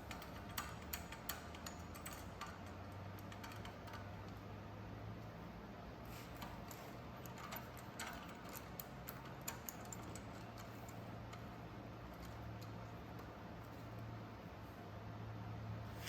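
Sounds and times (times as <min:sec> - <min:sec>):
small metal parts clicking: 0:00.0 - 0:04.4, 0:06.4 - 0:14.1.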